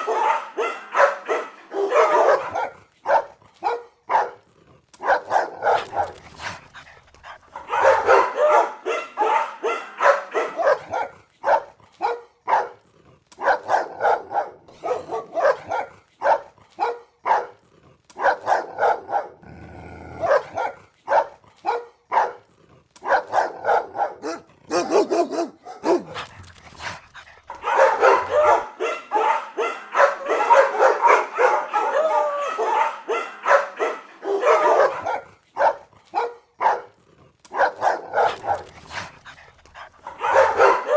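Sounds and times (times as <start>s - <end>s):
dogs barking aggressively: 0.0s - 40.9s.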